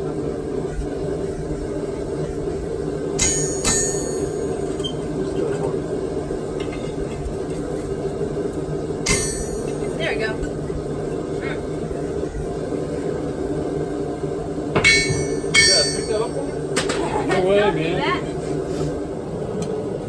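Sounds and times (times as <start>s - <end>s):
low hum: 0.0s - 20.0s
hammer blows on metal: 3.2s - 4.5s, 9.0s - 10.0s, 14.8s - 16.9s.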